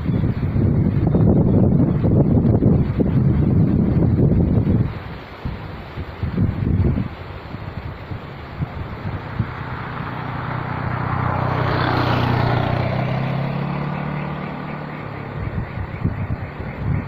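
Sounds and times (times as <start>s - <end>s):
motor vehicle passing by: 8.0s - 17.0s.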